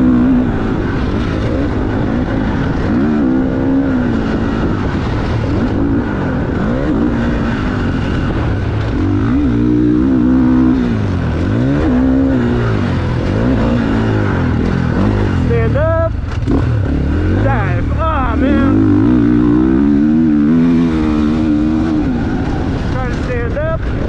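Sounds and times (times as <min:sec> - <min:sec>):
motocross bike engine revving: 0:00.0 - 0:24.0.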